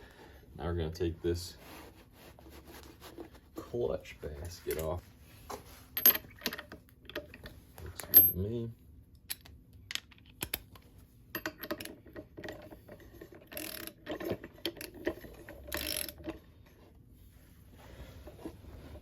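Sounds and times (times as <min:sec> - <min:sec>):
ratchet wrench ratcheting: 0:13.5 - 0:16.3.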